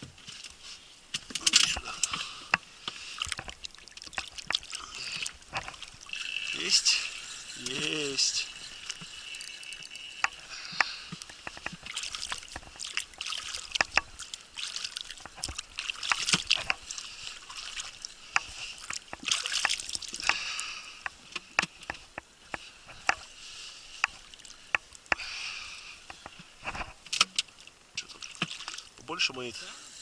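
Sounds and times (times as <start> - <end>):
water sloshing and trickling: 0.0 - 30.0
sharp clicks and knocks: 10.2 - 12.9, 13.7 - 14.2.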